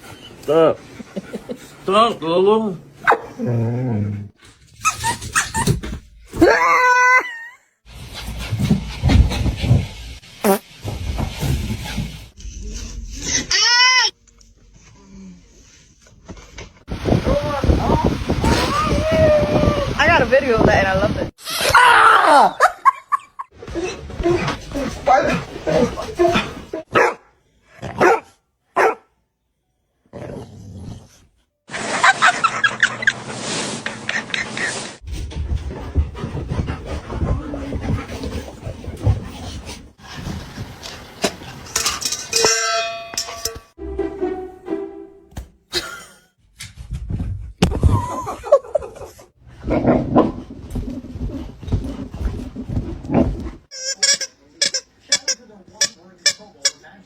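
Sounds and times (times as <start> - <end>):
dog barking: 3.0 - 3.4, 26.9 - 27.3, 27.9 - 29.1
dog growling: 3.2 - 4.4, 36.1 - 39.9.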